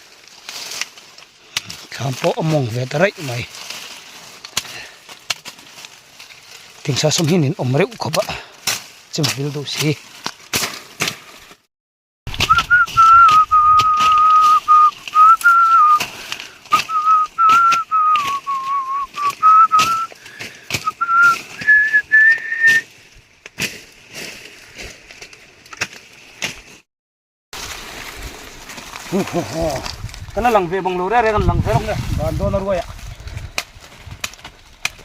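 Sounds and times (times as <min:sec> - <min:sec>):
person whistling a tune: 0:12.4 - 0:16.0, 0:16.7 - 0:20.1, 0:20.8 - 0:22.8.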